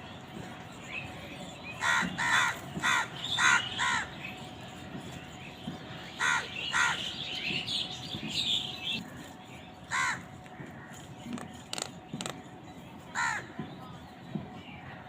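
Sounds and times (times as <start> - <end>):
high bird calls: 0.7 - 12.4
crows cawing: 1.8 - 4.1, 6.1 - 7.2, 9.9 - 11.0, 13.1 - 13.5.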